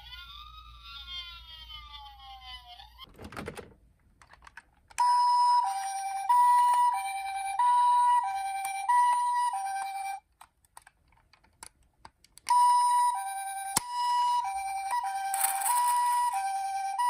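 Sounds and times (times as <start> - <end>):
toy siren high-low tone: 0.0 - 3.1, 5.0 - 10.2, 12.5 - 17.0
small clicks: 8.6 - 12.6.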